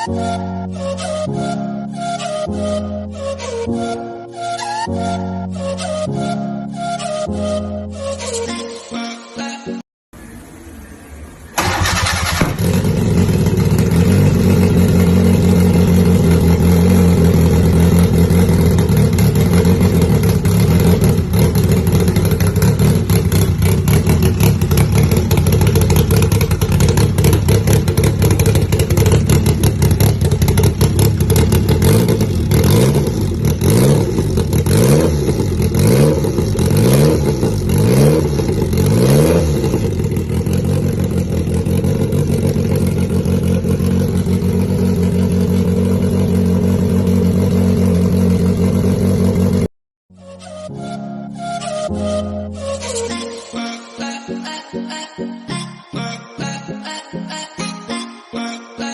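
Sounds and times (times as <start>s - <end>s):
engine idling and revving: 10.4s - 49.7s.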